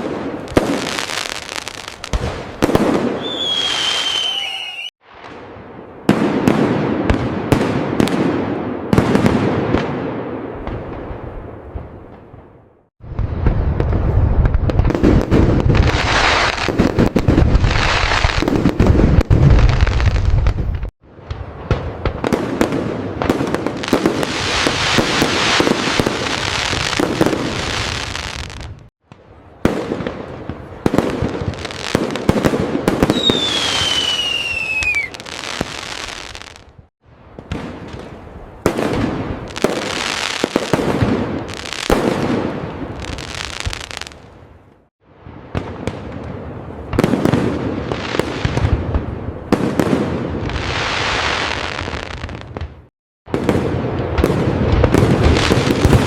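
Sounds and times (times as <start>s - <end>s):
whistling firework: 0.0s - 5.4s, 13.0s - 21.4s, 23.8s - 28.8s, 30.8s - 36.7s
fireworks crackling and bursting: 0.0s - 56.0s
deep firework booms: 2.0s - 4.4s, 5.0s - 56.0s.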